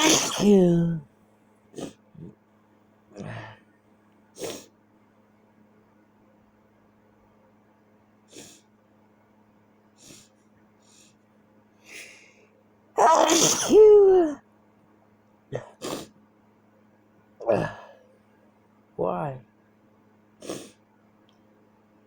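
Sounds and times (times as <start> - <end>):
person sneezing: 0.0 - 1.0, 13.0 - 14.4
faint breaths: 10.0 - 11.2, 11.8 - 12.6.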